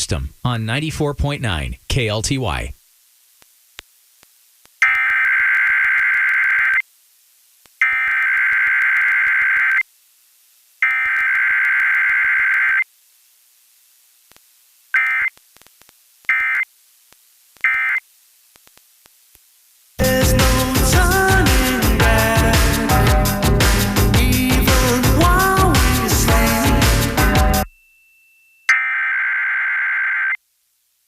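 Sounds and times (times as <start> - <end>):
modem-like data bursts: 14.9 - 15.4, 16.3 - 16.7.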